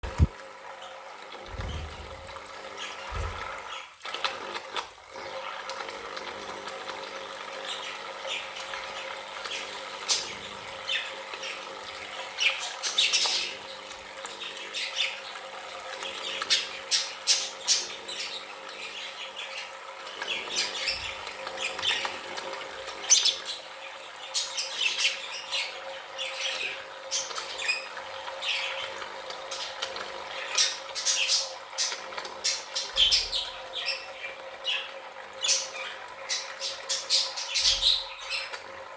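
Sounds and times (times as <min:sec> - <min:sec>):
budgerigars chirping: 0:30.4 - 0:38.5.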